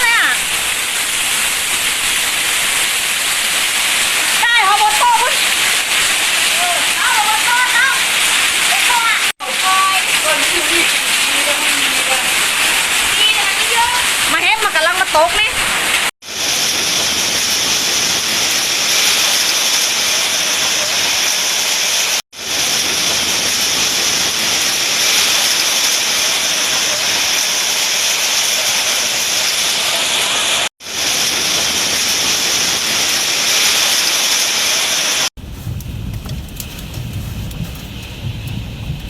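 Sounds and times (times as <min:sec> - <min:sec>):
heavy rain and hail hissing: 0:00.0 - 0:39.0
deep rumble: 0:35.4 - 0:39.0.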